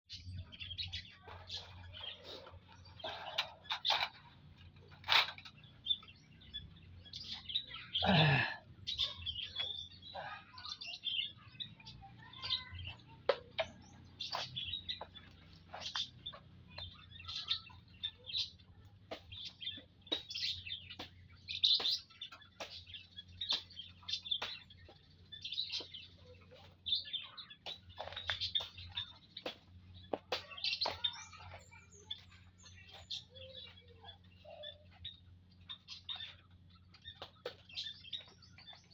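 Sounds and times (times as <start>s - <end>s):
finches chirping: 8.9s - 38.9s.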